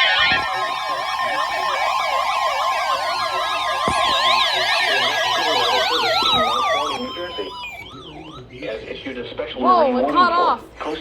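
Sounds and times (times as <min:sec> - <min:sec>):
steady alert tone: 0:00.0 - 0:08.6
warbling electronic sirens: 0:00.0 - 0:09.0.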